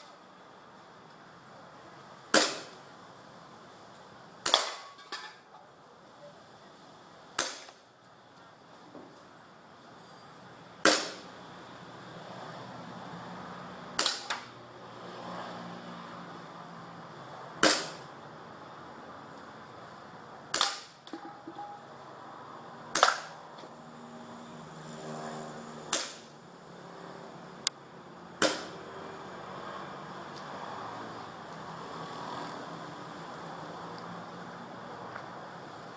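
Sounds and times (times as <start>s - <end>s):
airsoft pistol shots: 2.4s - 2.8s, 4.4s - 4.9s, 7.4s - 7.8s, 10.9s - 11.3s, 14.0s - 14.5s, 17.6s - 18.1s, 20.5s - 21.0s, 23.0s - 23.4s, 25.9s - 26.3s, 28.4s - 28.8s.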